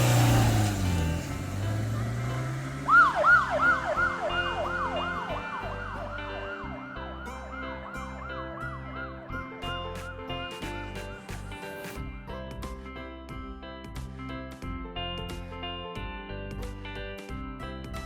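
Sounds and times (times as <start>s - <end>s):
background music: 0.0s - 18.0s
police siren yelping: 1.9s - 10.6s.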